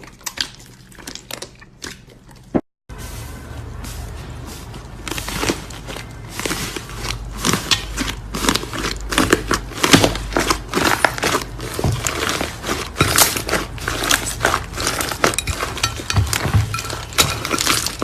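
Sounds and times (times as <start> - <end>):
crunchy slime crackling and popping: 4.8 - 18.0.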